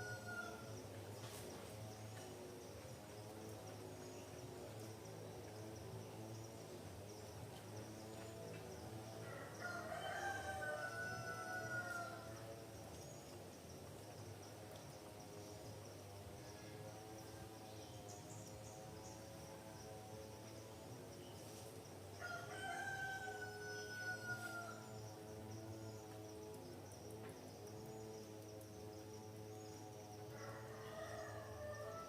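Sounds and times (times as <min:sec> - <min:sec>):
rooster crowing: 0:00.0 - 0:00.7, 0:09.2 - 0:12.4, 0:22.2 - 0:24.9, 0:30.3 - 0:32.0
insects chirring: 0:00.0 - 0:32.0.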